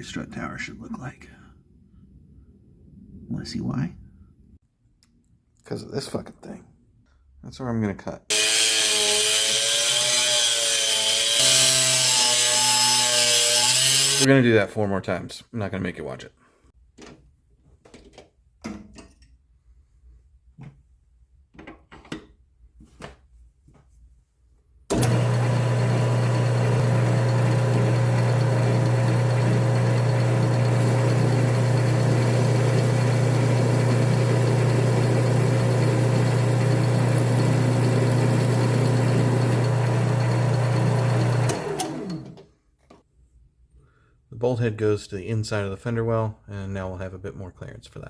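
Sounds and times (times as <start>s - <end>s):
electric shop machine humming: 8.3s - 14.3s, 24.9s - 42.5s.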